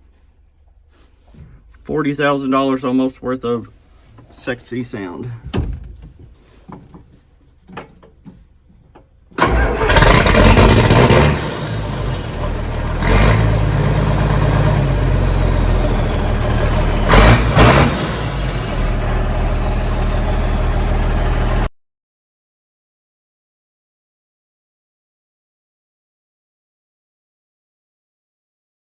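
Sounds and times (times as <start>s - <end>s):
tractor diesel engine running: 9.4s - 21.7s.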